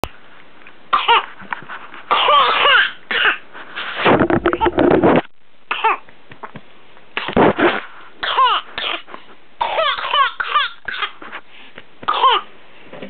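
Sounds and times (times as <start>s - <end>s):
harsh coughing fit: 0.9s - 1.3s, 2.1s - 3.4s, 8.2s - 11.3s, 12.1s - 12.5s.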